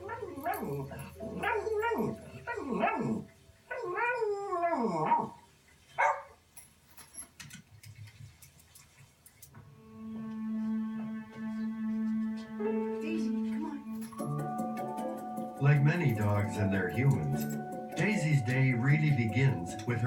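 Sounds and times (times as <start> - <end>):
dog howling: 0.0 - 5.3
dog yelping: 0.0 - 5.4, 6.0 - 6.3.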